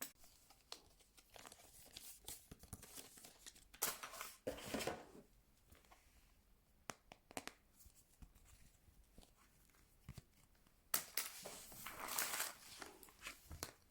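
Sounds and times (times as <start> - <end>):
small clicks and taps: 6.9 - 7.6
packaging tearing and crinkling: 11.1 - 13.3.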